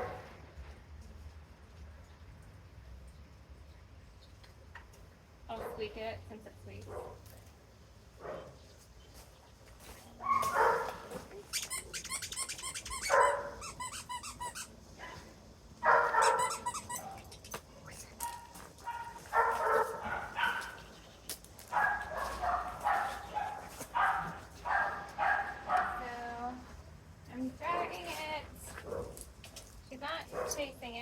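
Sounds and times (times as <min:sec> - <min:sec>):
dog toy squeaker squealing: 0:11.5 - 0:14.8, 0:16.2 - 0:17.5.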